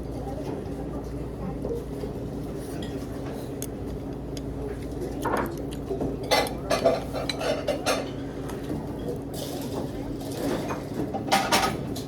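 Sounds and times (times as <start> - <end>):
utensils clinking on soup bowl: 6.2 - 8.2.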